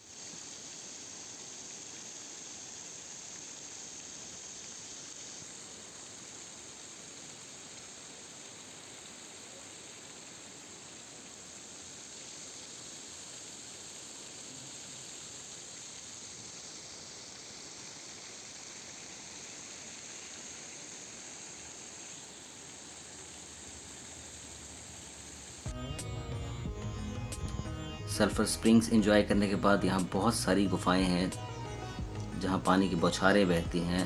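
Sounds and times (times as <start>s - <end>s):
water rushing from waterfalls: 0.0s - 25.7s.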